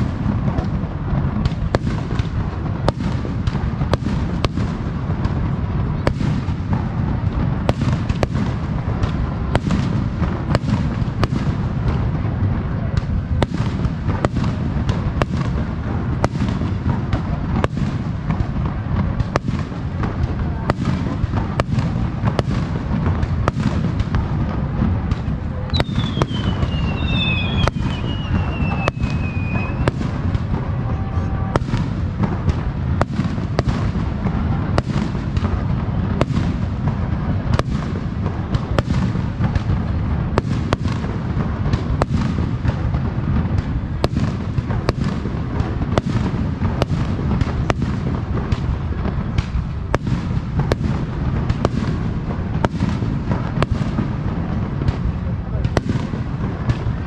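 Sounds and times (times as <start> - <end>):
fireworks bursting: 0.0 - 57.0
falling whistle: 25.8 - 29.8.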